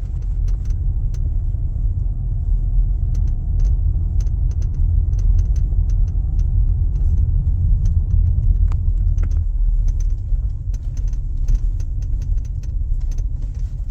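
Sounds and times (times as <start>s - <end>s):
windshield clicks and rattles: 0.0s - 1.6s, 2.9s - 13.9s
moving car rumble: 0.0s - 13.9s.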